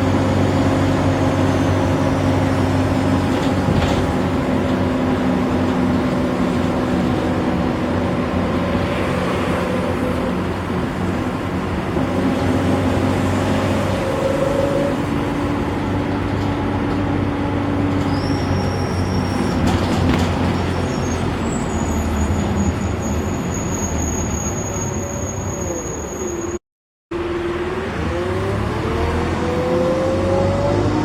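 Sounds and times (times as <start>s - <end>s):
bus diesel engine running: 0.0s - 23.8s.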